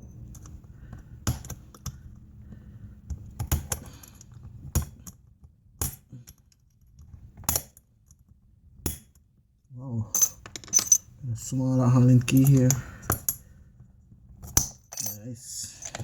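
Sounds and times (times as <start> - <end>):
allen key and screws clinking on metal: 10.1 - 11.1, 12.2 - 13.5, 14.4 - 16.0.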